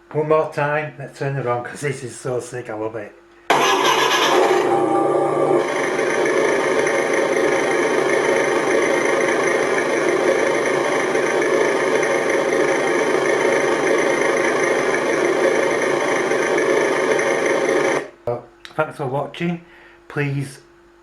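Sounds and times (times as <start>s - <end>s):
simulated truck engine idling: 3.5s - 18.0s.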